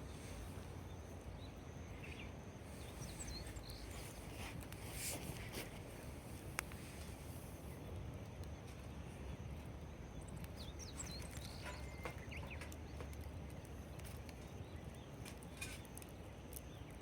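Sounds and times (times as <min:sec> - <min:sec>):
low steady rumble: 0:00.0 - 0:12.0
campfire crackling and popping: 0:00.0 - 0:17.0.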